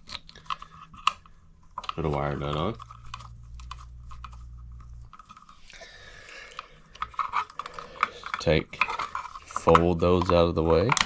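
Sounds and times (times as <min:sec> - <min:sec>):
plastic and wire crunching clicks: 0:00.0 - 0:05.8, 0:06.4 - 0:11.0
low hum: 0:01.3 - 0:09.5.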